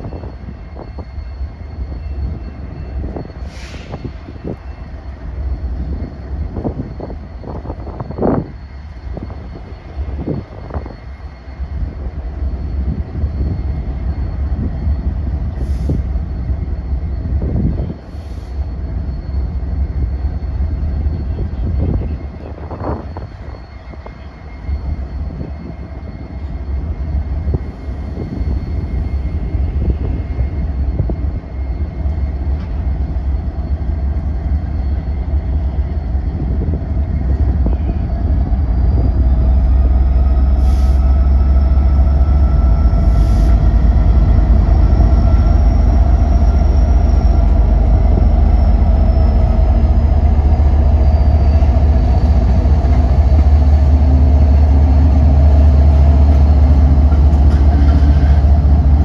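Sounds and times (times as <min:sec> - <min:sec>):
faint metallic whines: 0:00.0 - 0:59.0
train rumbling past: 0:00.0 - 0:59.0
short hisses: 0:03.4 - 0:04.3.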